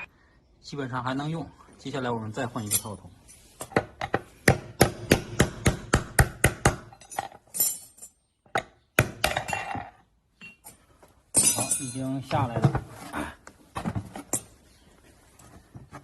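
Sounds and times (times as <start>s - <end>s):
metal knocks and clinks: 6.8s - 8.2s, 9.3s - 12.3s.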